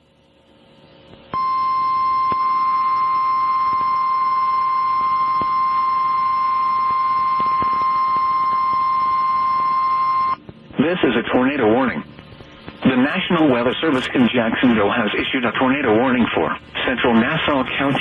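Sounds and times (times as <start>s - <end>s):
long steady alert tone: 1.3s - 10.4s.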